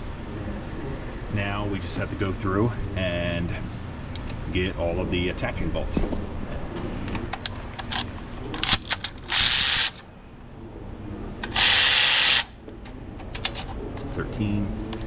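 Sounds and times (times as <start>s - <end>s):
power ratchet spinning bolts: 8.6s - 10.0s, 11.5s - 12.5s.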